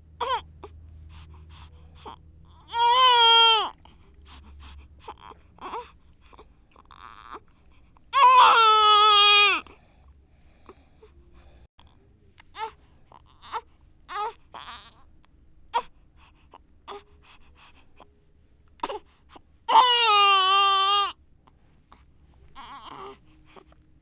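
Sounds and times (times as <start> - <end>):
baby crying: 0.2 - 0.4, 2.0 - 3.8, 8.2 - 9.7, 19.7 - 21.2, 22.6 - 23.2.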